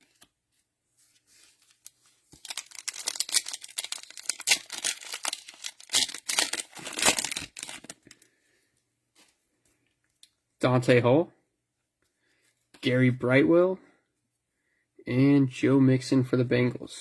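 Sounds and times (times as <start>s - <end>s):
cellophane wrapper crinkling: 1.3s - 8.3s.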